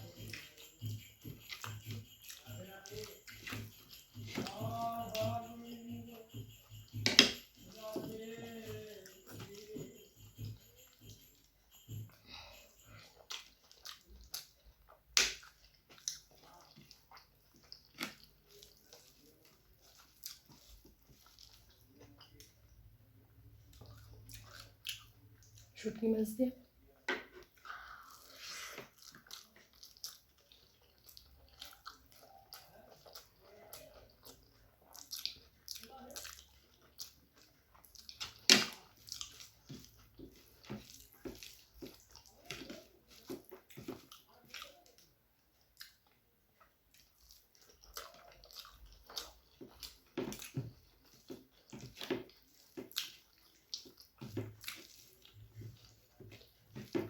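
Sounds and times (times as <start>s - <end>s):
wet chewing and lip smacks: 0.0s - 8.3s, 12.9s - 25.8s, 26.6s - 57.0s.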